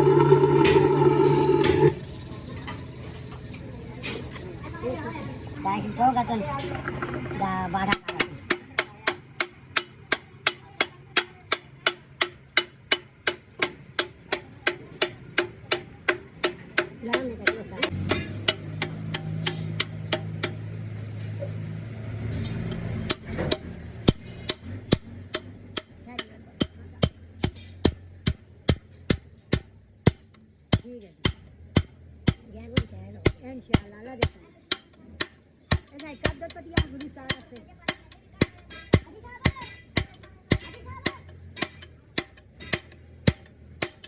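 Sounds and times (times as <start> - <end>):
hammer striking metal: 17.9 - 20.6, 34.2 - 44.0.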